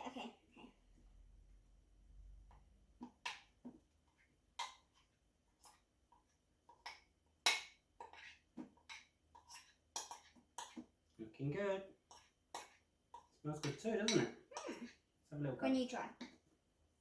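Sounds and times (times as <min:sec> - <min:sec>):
spoon scraping a bowl: 0:02.5 - 0:11.0, 0:11.9 - 0:15.1.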